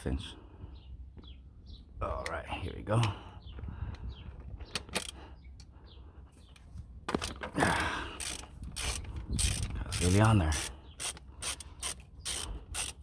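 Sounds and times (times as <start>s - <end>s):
ratchet clicking: 8.2s - 13.0s.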